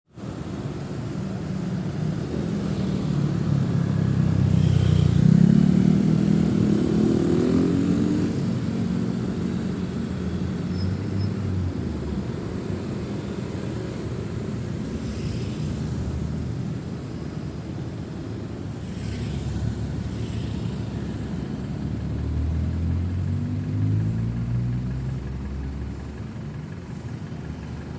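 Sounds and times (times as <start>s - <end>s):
traffic of motorcycles and cars: 0.1s - 27.9s
engine speeding up and passing: 2.2s - 10.0s, 18.8s - 27.8s.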